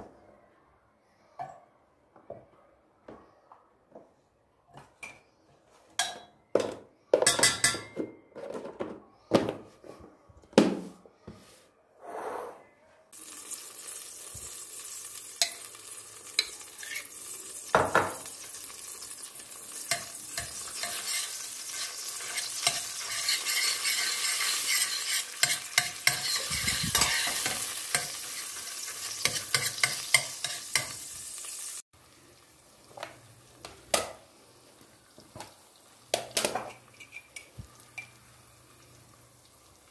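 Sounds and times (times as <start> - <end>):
utensils clattering against cookware: 6.0 - 9.0, 19.9 - 31.0
food sizzling in hot oil: 13.1 - 39.9.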